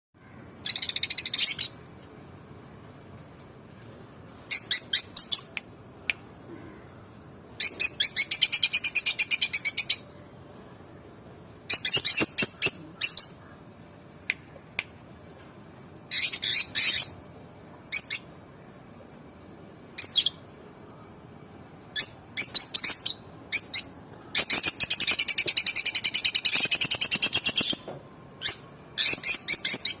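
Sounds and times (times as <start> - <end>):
birds chirping: 0.3 - 2.1, 3.8 - 14.6, 15.8 - 19.0, 19.9 - 30.0
rapid bird chattering: 11.8 - 13.6.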